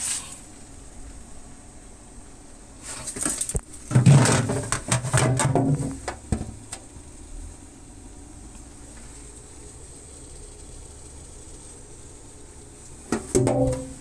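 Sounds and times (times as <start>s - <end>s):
refrigerator parts knocking and rattling: 3.1s - 6.8s, 13.1s - 14.0s.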